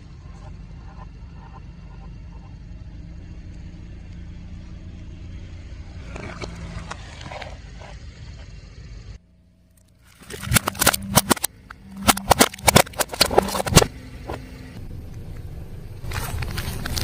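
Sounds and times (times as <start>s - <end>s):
car engine humming: 0.0s - 17.0s.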